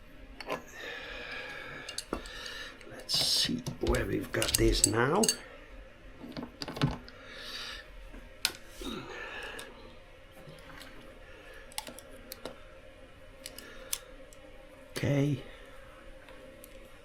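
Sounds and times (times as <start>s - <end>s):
metal hand tools clicking: 1.9s - 2.5s, 4.3s - 5.4s.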